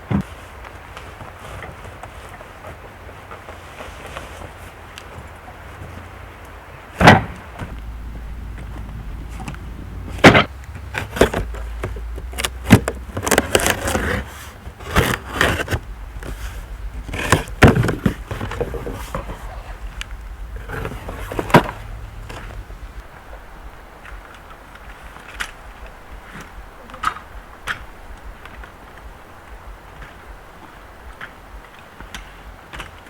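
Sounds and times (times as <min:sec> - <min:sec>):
sharp knocks and clunks: 0:07.0 - 0:23.1
light clattering: 0:07.1 - 0:23.4
low steady hum: 0:07.2 - 0:31.8.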